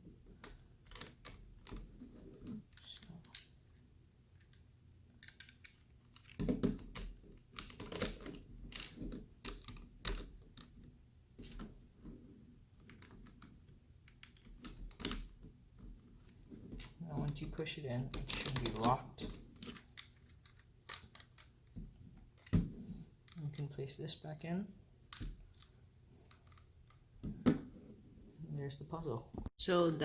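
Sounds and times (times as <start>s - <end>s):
plastic bricks clicking: 5.2s - 10.7s, 18.1s - 21.8s.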